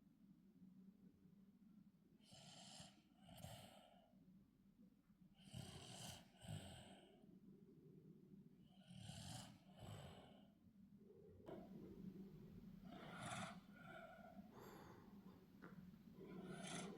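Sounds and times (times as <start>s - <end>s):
toddler snoring faintly: 12.8s - 15.1s, 16.2s - 16.9s.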